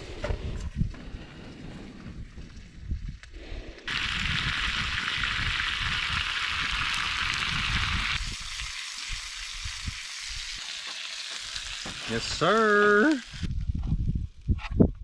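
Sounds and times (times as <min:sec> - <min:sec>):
chicken sizzling over fire: 0:03.0 - 0:14.5.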